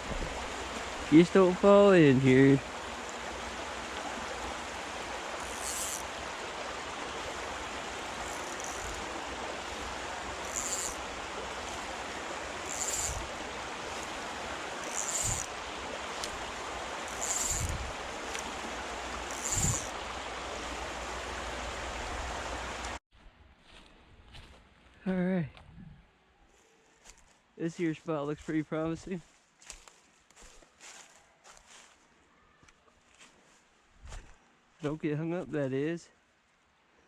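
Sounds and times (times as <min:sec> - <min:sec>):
creek water running: 0:00.0 - 0:23.0
short high hiss: 0:07.7 - 0:21.1.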